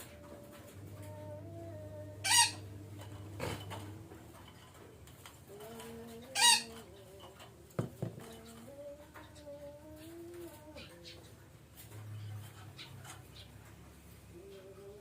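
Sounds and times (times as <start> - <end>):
parakeet squawks: 2.2 - 2.6, 6.4 - 6.8.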